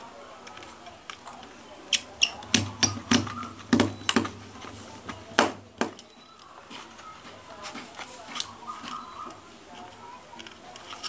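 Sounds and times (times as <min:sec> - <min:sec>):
small hard parts clicking: 0:00.4 - 0:04.7, 0:07.9 - 0:11.0.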